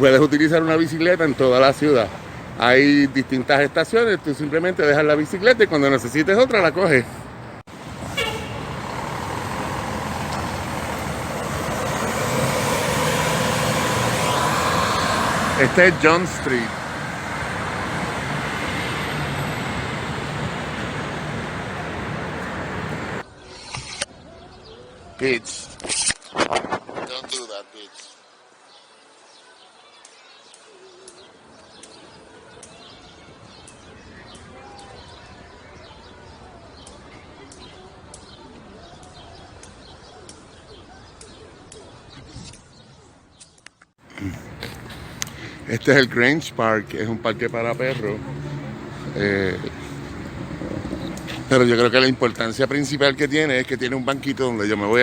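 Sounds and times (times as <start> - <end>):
city traffic noise: 0.0 - 25.0, 44.0 - 55.0
heavy vehicle engine drone: 7.2 - 23.2, 44.1 - 53.7.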